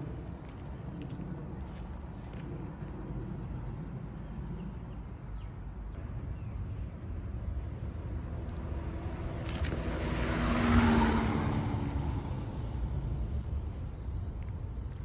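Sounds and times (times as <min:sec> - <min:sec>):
motorcycle passing by: 0:08.6 - 0:13.4.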